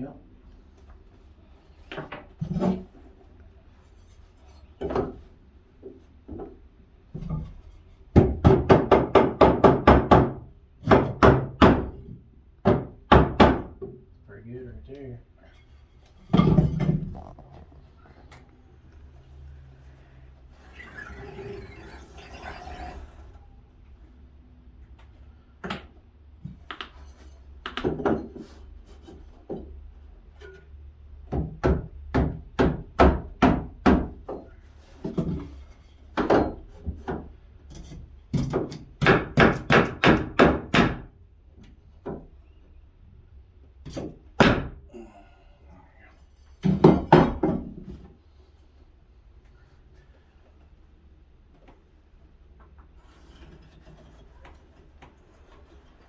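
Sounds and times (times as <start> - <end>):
hammer striking wooden beams: 8.1 - 14.0, 31.3 - 34.4, 38.3 - 41.1, 43.9 - 44.8.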